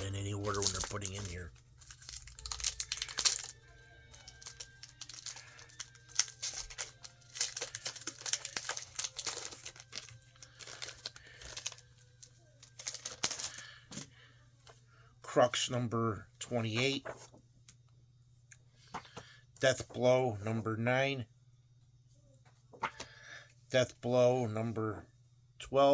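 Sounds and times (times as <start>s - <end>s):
plastic bags crinkling: 0.0s - 13.8s.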